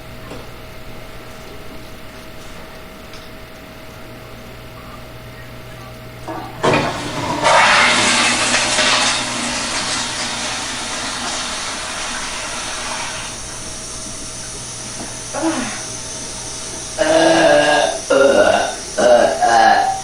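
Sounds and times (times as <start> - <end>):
loud rushing hiss: 6.3 - 19.0.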